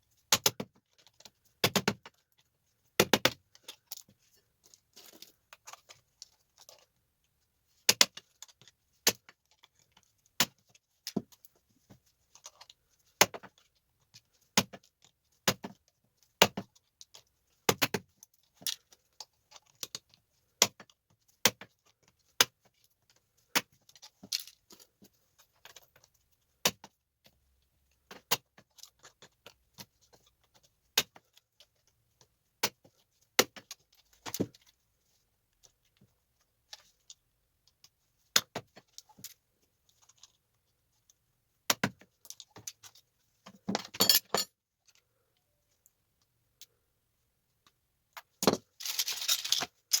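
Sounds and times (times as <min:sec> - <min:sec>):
small parts clinking: 0:43.7 - 0:44.5, 0:48.5 - 0:50.0.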